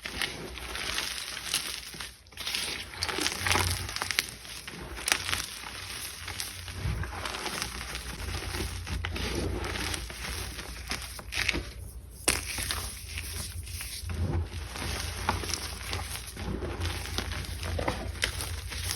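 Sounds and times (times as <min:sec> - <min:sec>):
chalk crunching: 0:00.0 - 0:18.9
steady low hum: 0:06.0 - 0:18.9.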